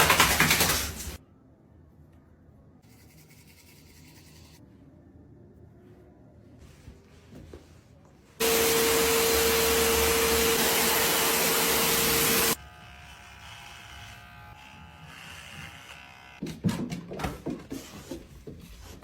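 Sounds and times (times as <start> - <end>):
small electric motor humming: 8.4 - 16.4.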